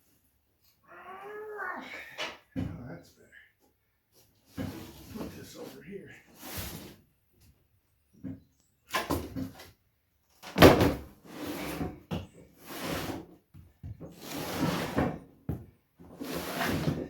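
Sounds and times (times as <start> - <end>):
mower deck parts scraping and clattering: 16.0 - 17.0.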